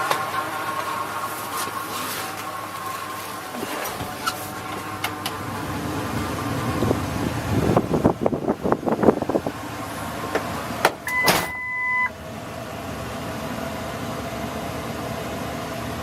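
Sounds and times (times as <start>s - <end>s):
truck running hum: 0.0s - 16.0s
truck beep: 11.0s - 12.2s.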